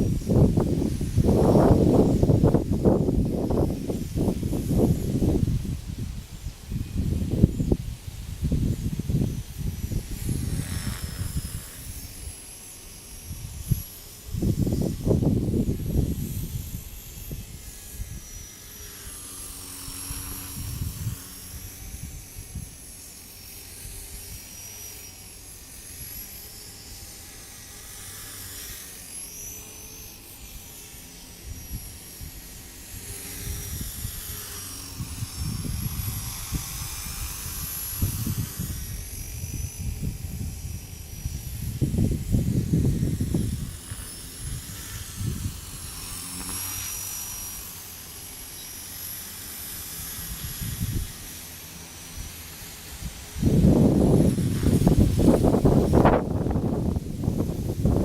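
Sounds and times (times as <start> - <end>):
wind buffeting microphone: 0.0 - 12.2, 13.3 - 18.3, 20.0 - 22.8, 33.0 - 46.2, 50.2 - 51.3, 52.2 - 58.0
rc helicopter motor whine: 0.0 - 58.0.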